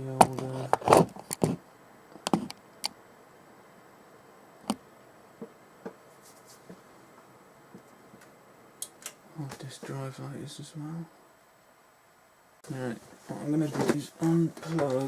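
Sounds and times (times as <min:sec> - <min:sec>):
faint steady hiss: 0:00.0 - 0:15.0.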